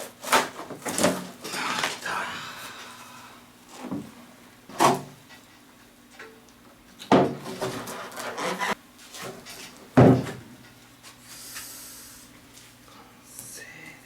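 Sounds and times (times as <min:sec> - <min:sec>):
rubbing and scraping on hull: 0:07.5 - 0:08.8.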